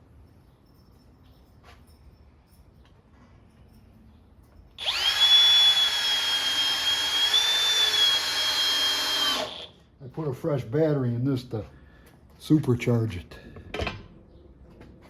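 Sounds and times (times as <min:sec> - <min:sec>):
cordless drill driving screw into wood: 0:04.8 - 0:09.8.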